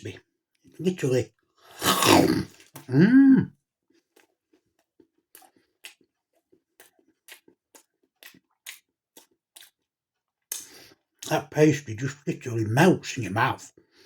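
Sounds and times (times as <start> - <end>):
chewing crunchy pastry: 3.8 - 11.0.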